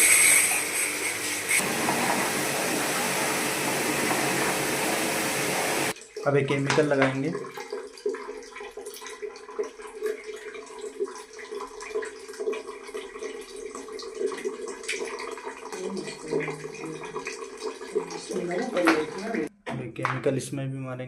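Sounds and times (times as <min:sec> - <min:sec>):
motor humming: 0:00.0 - 0:05.9
water spraying and splashing: 0:00.0 - 0:06.0.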